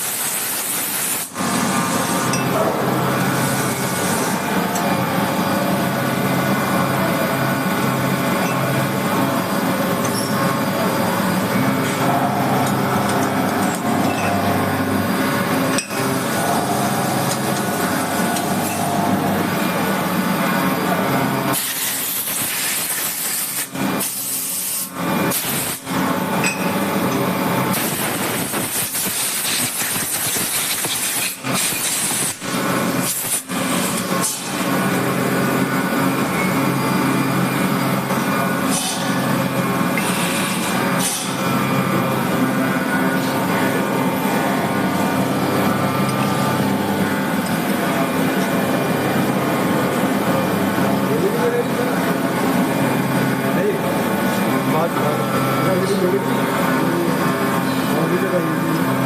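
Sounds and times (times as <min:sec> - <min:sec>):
milling machine whine: 0:00.0 - 0:59.0
machine hiss: 0:21.5 - 0:25.9, 0:27.7 - 0:34.5.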